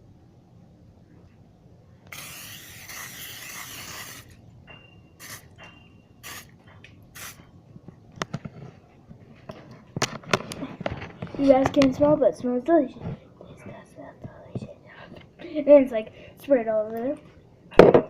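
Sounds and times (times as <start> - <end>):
cooking spray hissing: 2.1 - 4.4, 5.2 - 5.5, 6.2 - 6.5, 7.2 - 7.4.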